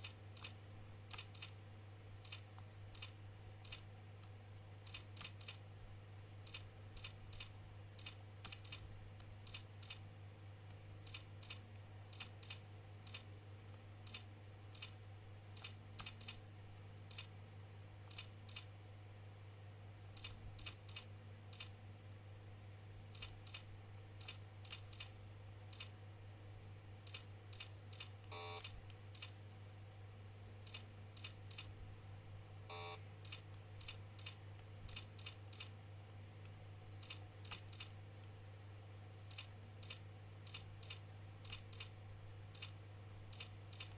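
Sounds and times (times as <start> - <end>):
keyboard typing: 0.0 - 1.6, 2.2 - 3.9, 4.8 - 5.6, 6.4 - 10.0, 11.0 - 13.3, 14.0 - 15.0, 15.6 - 16.4, 17.1 - 17.3, 18.1 - 18.7, 20.2 - 21.7, 23.1 - 25.1, 25.7 - 25.9, 27.1 - 29.4, 30.6 - 31.7, 32.7 - 35.7, 37.0 - 38.0, 39.3 - 41.9, 42.5 - 43.9
steady low hum: 0.0 - 43.9.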